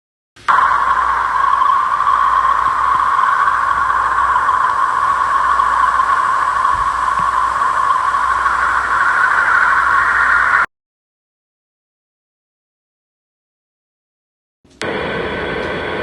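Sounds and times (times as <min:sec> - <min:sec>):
steady hiss-like drone: 0:00.4 - 0:10.7, 0:14.8 - 0:16.0.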